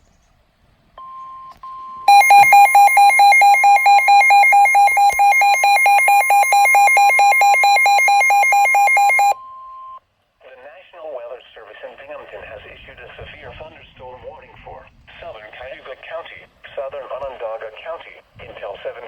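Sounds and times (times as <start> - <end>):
high alarm tone: 2.1 - 9.4
rapid electronic beeping: 2.1 - 9.4.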